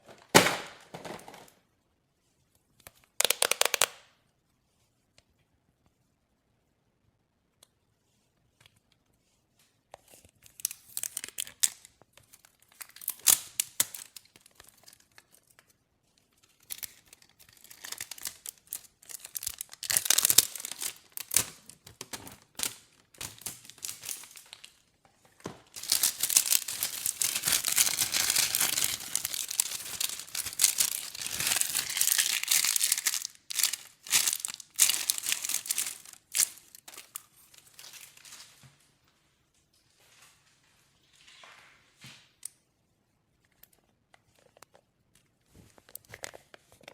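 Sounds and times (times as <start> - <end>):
slime squishing and crackling: 16.2 - 24.8, 25.7 - 38.1.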